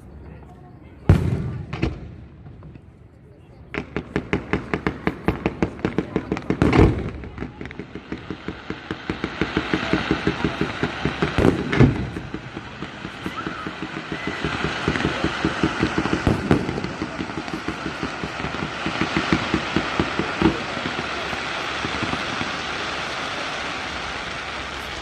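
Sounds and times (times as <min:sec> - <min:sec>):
fireworks bangs: 0:01.0 - 0:25.0
fireworks thumps: 0:03.8 - 0:22.5
steady hiss: 0:07.7 - 0:25.0.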